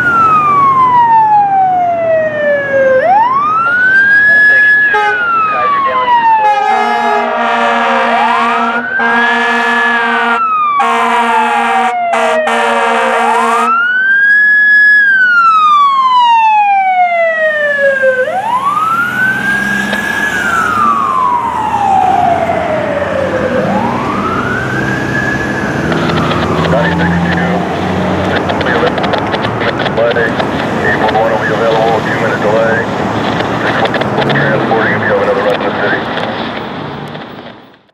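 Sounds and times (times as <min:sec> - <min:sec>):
truck engine rumble: 0:00.0 - 0:12.1, 0:13.0 - 0:37.9
wailing siren: 0:00.0 - 0:36.0
air horn blasting: 0:04.8 - 0:05.4, 0:06.4 - 0:13.8.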